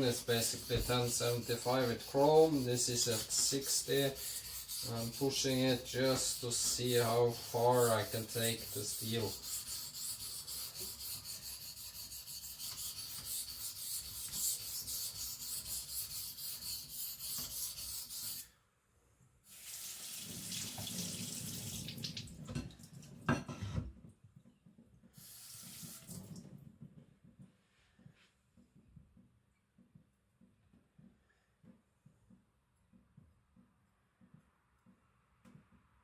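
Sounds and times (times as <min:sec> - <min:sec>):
knife scraping on wet whetstone: 0:00.0 - 0:18.5.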